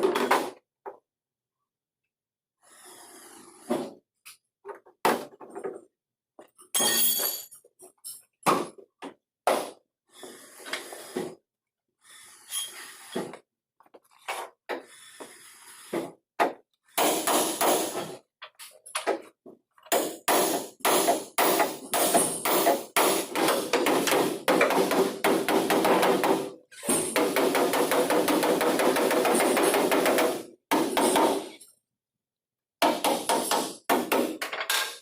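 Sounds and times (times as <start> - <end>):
hammer on sheet metal: 17.0 - 18.1, 19.9 - 31.5, 32.8 - 34.5.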